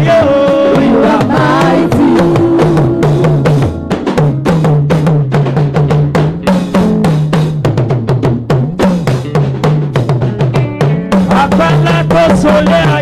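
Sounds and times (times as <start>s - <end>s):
bass line: 0.0s - 13.0s
drums and percussion beat: 0.0s - 13.0s.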